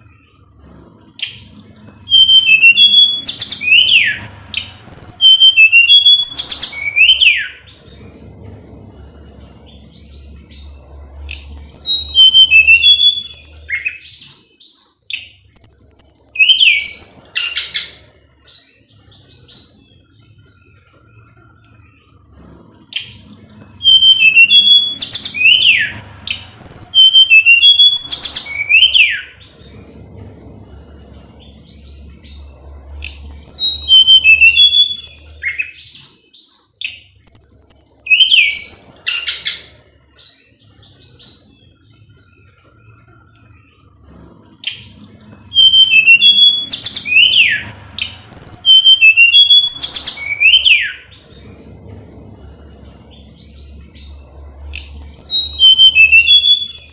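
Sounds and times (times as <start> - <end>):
songbird chirps and whistles: 0.5 - 8.1, 9.0 - 21.4, 22.3 - 30.1, 30.8 - 41.9, 44.0 - 51.8, 52.4 - 56.9.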